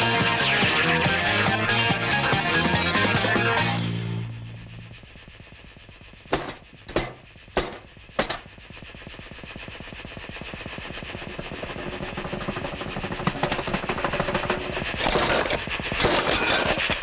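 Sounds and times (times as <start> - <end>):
sharp bangs: 6.3 - 8.5
fast rattling: 11.5 - 17.0.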